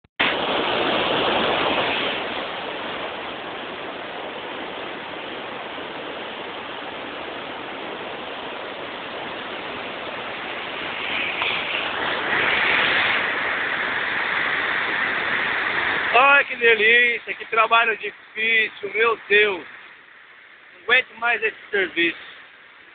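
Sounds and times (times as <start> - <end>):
waterfall rushing: 0.2 - 22.9.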